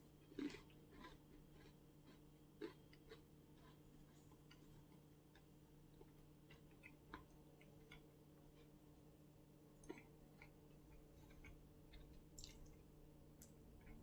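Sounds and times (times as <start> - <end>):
steady low hum: 0.0 - 14.0
mouth clicks of chewing: 9.8 - 12.8.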